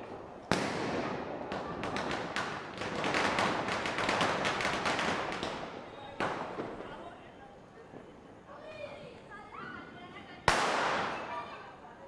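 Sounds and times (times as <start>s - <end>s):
firecracker bang: 0.0s - 5.6s, 10.5s - 11.4s
string of firecrackers popping: 0.0s - 7.0s, 10.5s - 11.5s.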